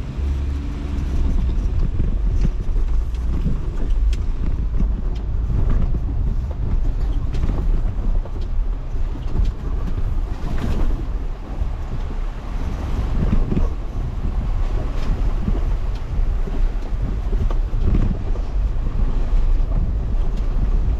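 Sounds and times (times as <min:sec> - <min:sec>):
off-road vehicle engine rumble: 0:00.0 - 0:20.9
rocks knocking and crunching: 0:01.0 - 0:11.2.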